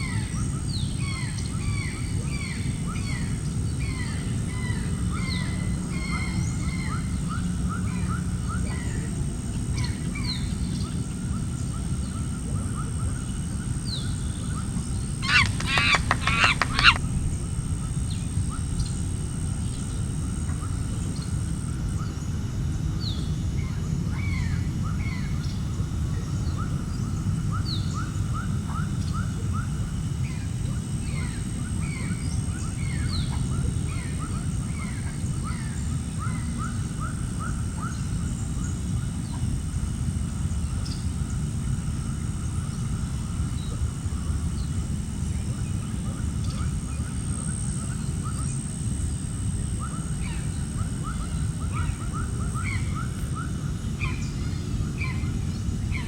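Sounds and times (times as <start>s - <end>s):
larger bird calling loudly: 15.2s - 17.0s
small birds chirping: 15.2s - 17.3s.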